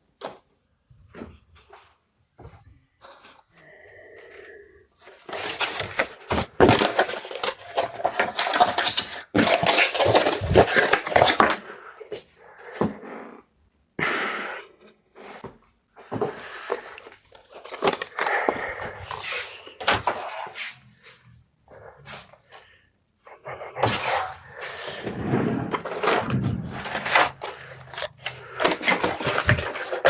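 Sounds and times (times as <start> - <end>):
packaging crinkling and rustling: 5.0 - 11.6, 25.7 - 30.0.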